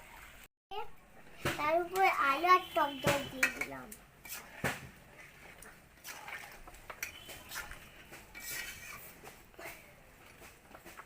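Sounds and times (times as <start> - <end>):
spoon scraping cooking pot: 3.2 - 11.0.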